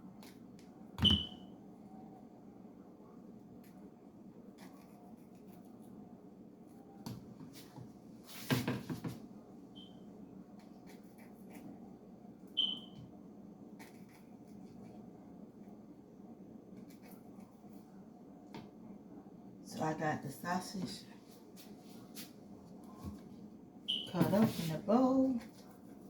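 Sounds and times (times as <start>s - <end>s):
steady low hum: 0.0s - 8.4s, 9.0s - 26.0s.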